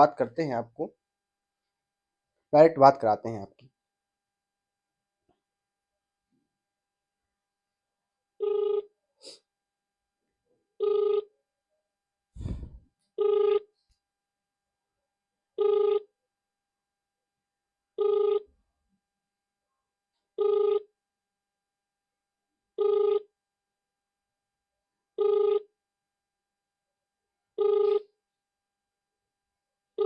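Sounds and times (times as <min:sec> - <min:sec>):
telephone ringback beeps: 0:08.4 - 0:08.9, 0:13.2 - 0:13.6, 0:25.2 - 0:25.6, 0:27.6 - 0:28.1.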